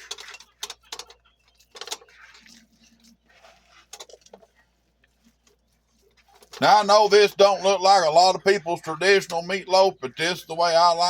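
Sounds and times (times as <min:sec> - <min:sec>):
hands squishing raw meat: 0:00.0 - 0:06.6.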